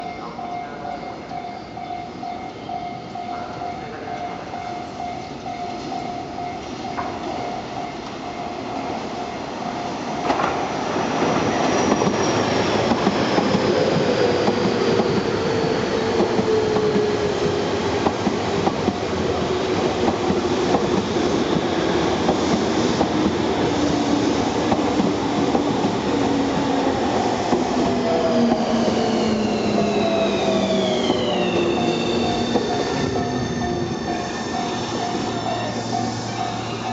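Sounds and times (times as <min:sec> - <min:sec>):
level crossing warning bell: 0:00.0 - 0:10.4, 0:29.3 - 0:36.9
train wheels on rails: 0:02.8 - 0:36.9.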